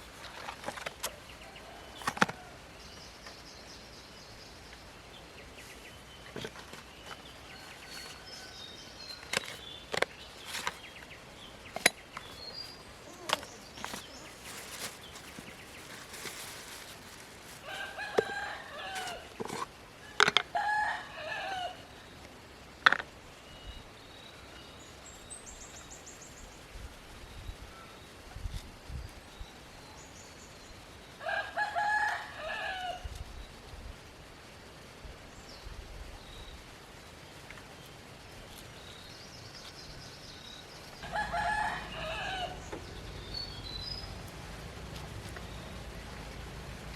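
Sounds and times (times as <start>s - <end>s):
rooster crowing: 17.6s - 19.3s, 20.1s - 21.9s, 31.2s - 33.0s, 41.0s - 42.7s.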